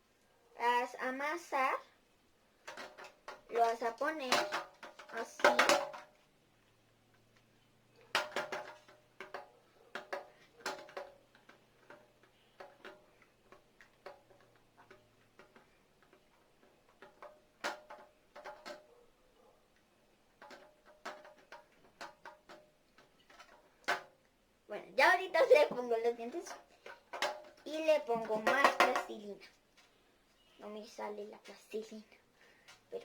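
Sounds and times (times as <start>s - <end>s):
plastic toy pieces clicking: 2.6s - 6.1s, 20.4s - 24.1s.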